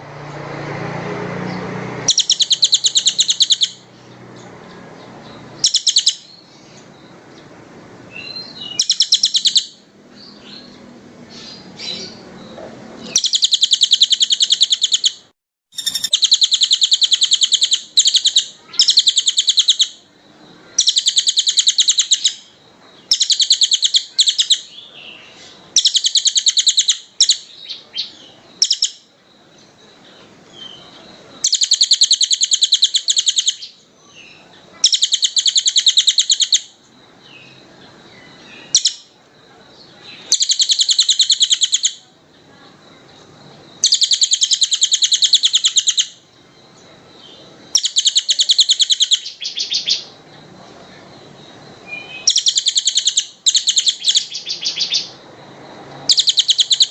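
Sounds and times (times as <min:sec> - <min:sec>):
songbird high trills: 0:02.1 - 0:04.1, 0:05.1 - 0:07.2, 0:08.1 - 0:09.8, 0:10.4 - 0:29.1, 0:39.9 - 0:42.1, 0:43.8 - 0:46.2, 0:51.8 - 0:55.2, 0:56.0 - 0:56.9.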